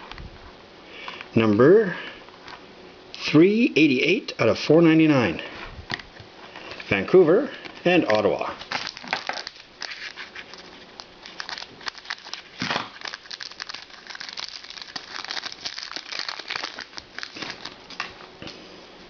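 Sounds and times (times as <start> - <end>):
cards rustling: 8.0 - 18.2
wrappers crinkling: 8.4 - 18.3.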